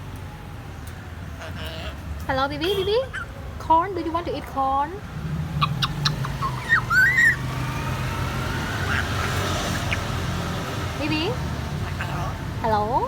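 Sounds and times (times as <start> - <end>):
parrot whistle: 5.6 - 7.4.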